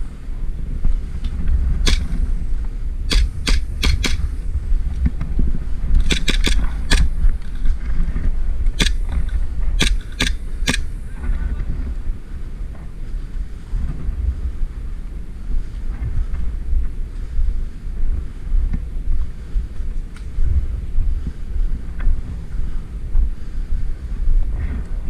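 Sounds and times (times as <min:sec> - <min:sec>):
wind rumble on microphone: 0:00.0 - 0:25.0
airsoft gun shots: 0:01.8 - 0:02.1, 0:03.1 - 0:04.3, 0:06.0 - 0:07.1, 0:08.8 - 0:09.2, 0:09.8 - 0:10.9.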